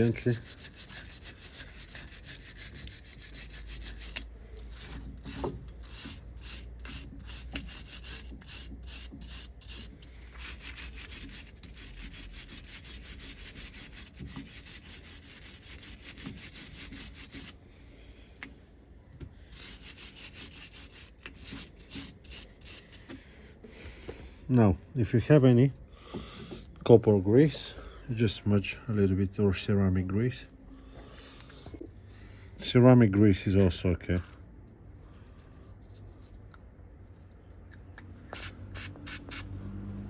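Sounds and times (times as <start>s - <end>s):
scrubbing metal with abrasive: 0.0s - 17.6s, 19.5s - 23.1s.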